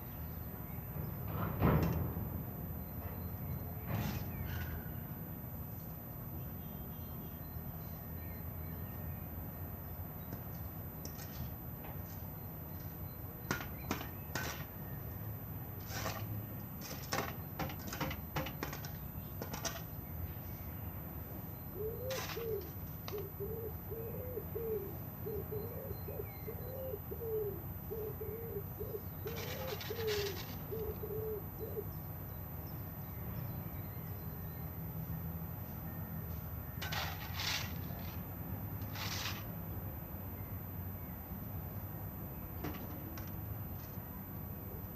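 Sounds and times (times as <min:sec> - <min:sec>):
bird calling low notes: 0:21.7 - 0:32.0.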